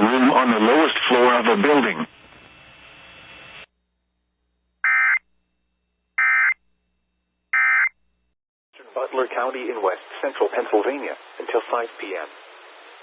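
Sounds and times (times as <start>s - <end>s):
faint radio hiss: 0.0s - 3.6s, 8.8s - 13.0s.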